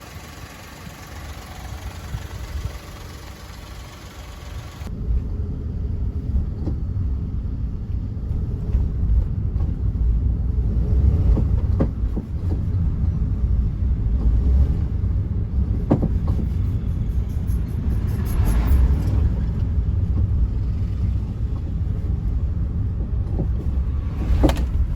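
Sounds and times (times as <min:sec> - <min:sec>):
vehicle low rumble: 0:00.0 - 0:24.9
sharp knocks or rattles: 0:15.7 - 0:19.6.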